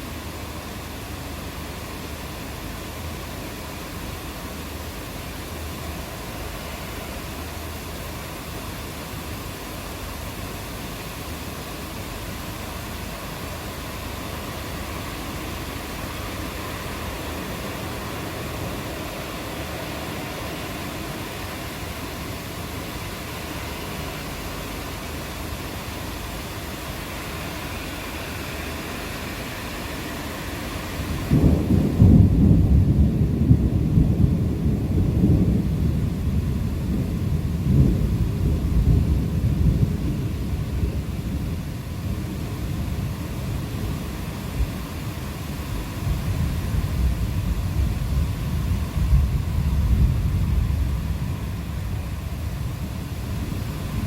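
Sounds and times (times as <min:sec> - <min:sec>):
rain hiss: 0:00.0 - 0:54.0
thunder rumbling: 0:12.2 - 0:54.0.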